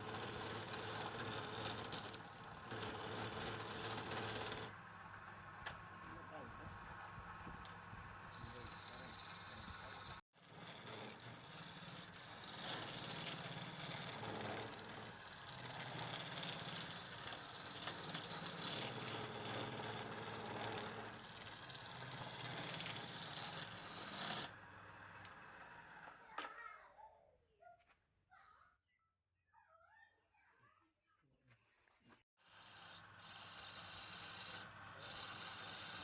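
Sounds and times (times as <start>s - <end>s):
woodworking machine cutting wood: 8.3s - 24.6s, 32.5s - 36.0s.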